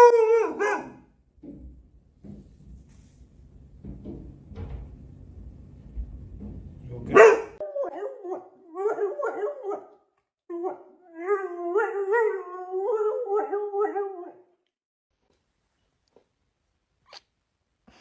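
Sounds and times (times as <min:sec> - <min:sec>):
dog howling: 0:00.0 - 0:01.0, 0:07.3 - 0:14.6.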